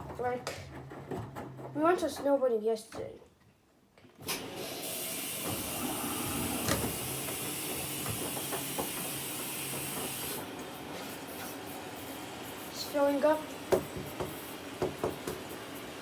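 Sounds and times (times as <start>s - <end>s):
water rushing into washing machine: 4.2s - 16.0s.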